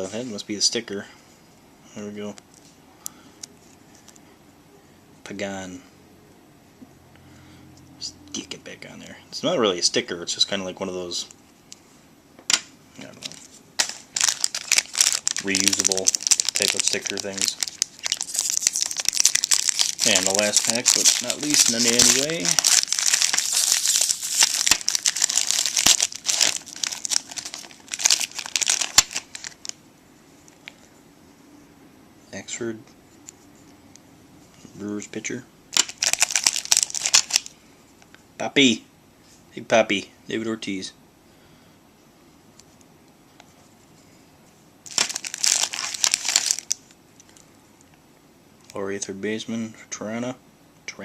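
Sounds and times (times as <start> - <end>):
card pack packaging crinkling: 13.0 - 29.8, 35.7 - 37.5, 44.8 - 47.4.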